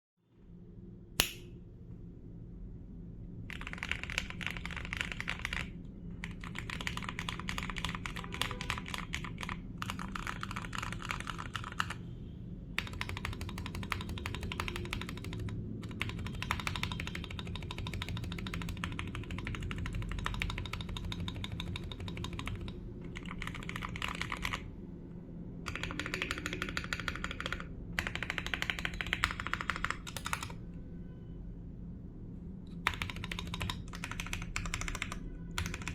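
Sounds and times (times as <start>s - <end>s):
sharp click: 1.2s - 1.5s
fast typing on mechanical keyboard: 3.4s - 12.0s, 12.8s - 24.7s, 25.7s - 30.6s, 32.8s - 35.9s.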